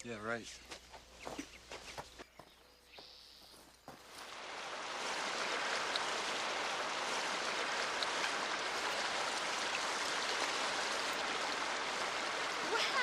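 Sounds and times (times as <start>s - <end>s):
fast stream rushing: 3.9s - 13.0s.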